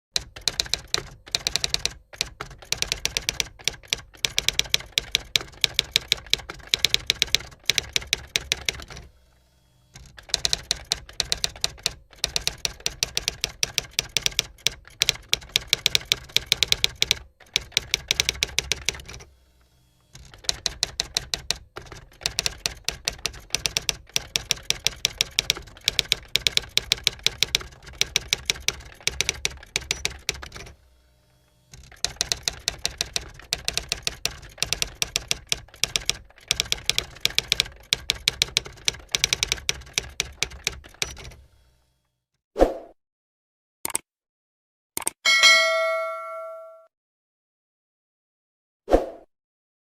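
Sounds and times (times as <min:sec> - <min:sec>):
typewriter keys clacking: 0:00.2 - 0:09.1, 0:10.0 - 0:19.3, 0:20.2 - 0:30.7, 0:31.8 - 0:41.4.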